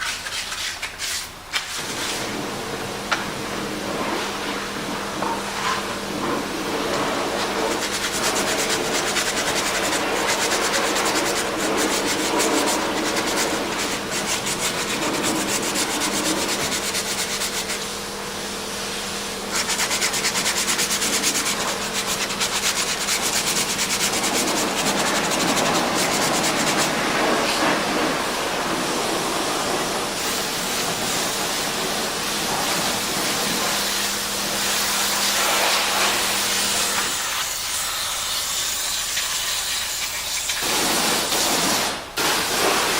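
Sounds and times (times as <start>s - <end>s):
low machine hum: 1.8s - 37.3s
rasping scrub on brake parts: 6.9s - 17.9s, 19.5s - 27.8s.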